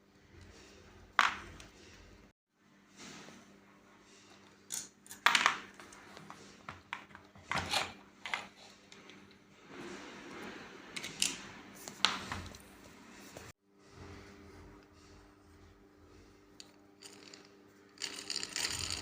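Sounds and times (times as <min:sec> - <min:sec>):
metal parts clinking: 0:17.0 - 0:19.0.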